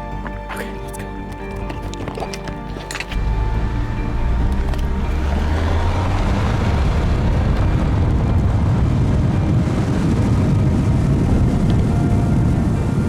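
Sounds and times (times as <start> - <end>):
vehicle rumbling on the move: 3.2 - 13.0.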